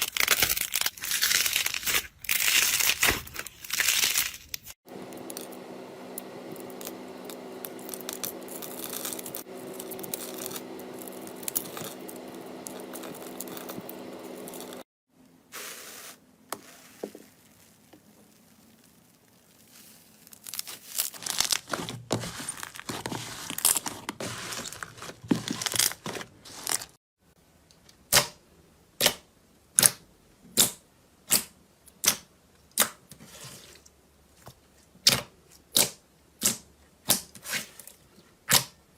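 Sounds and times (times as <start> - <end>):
slime crackling: 16.9 - 21.7.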